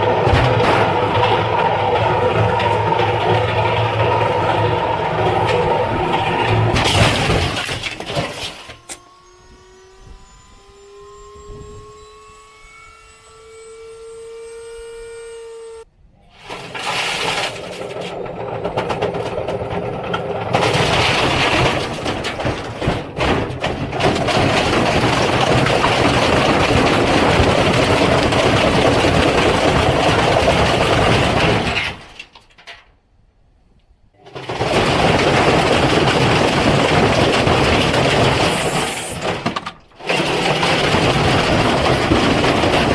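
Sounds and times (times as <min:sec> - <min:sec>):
brick rattling and banging in drum: 0:00.0 - 0:08.4, 0:16.7 - 0:32.8, 0:34.3 - 0:42.9
washing machine motor whine: 0:08.5 - 0:20.7.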